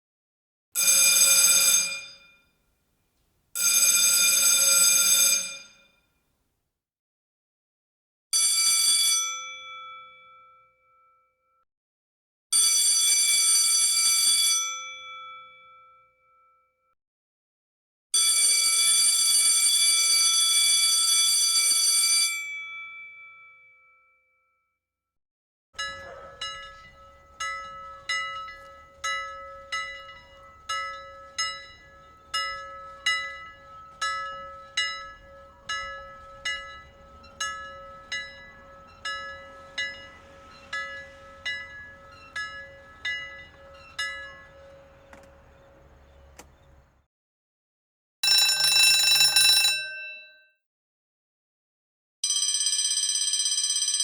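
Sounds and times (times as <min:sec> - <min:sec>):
school bell ringing: 0:00.8 - 0:02.2, 0:03.6 - 0:05.8, 0:08.4 - 0:09.7, 0:12.6 - 0:14.9, 0:18.2 - 0:22.6, 0:25.8 - 0:47.0, 0:48.2 - 0:50.4
single bell struck repeatedly: 0:25.8 - 0:45.1, 0:48.2 - 0:50.4.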